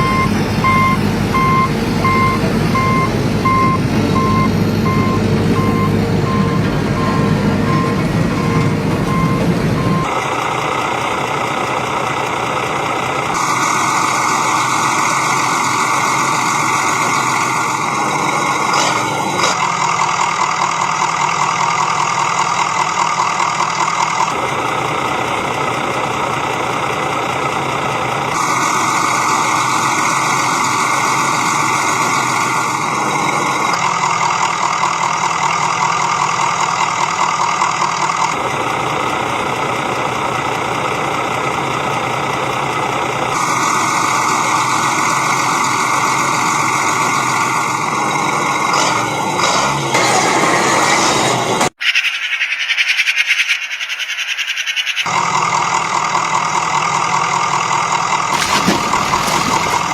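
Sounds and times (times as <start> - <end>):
reversing beeps: 0.0 - 10.1
truck engine running: 0.0 - 51.8, 54.9 - 59.9.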